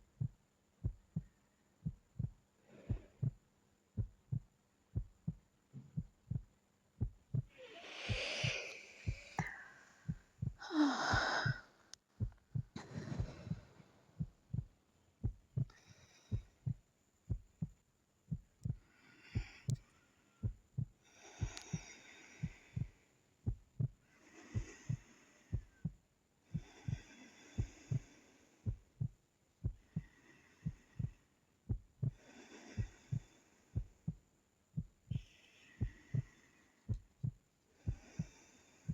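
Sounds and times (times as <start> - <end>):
low heartbeat thuds: 0.0 - 11.6, 12.2 - 19.8, 20.4 - 24.0, 24.6 - 38.9
woman breathing in sleep: 2.2 - 3.4, 7.4 - 14.7, 15.6 - 17.4, 18.7 - 29.1, 29.7 - 34.2, 35.1 - 38.9.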